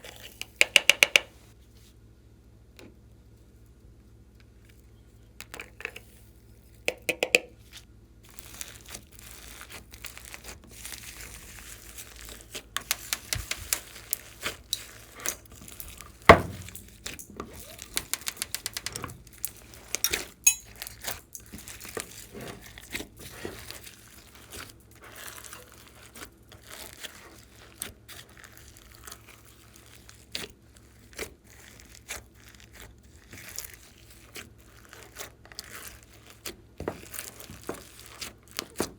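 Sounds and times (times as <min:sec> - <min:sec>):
slime crackling and popping: 0:08.2 - 0:38.9.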